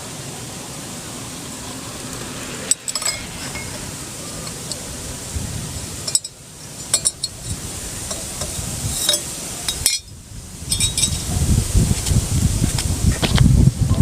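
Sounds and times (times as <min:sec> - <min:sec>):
microphone handling noise: 0:07.3 - 0:14.0.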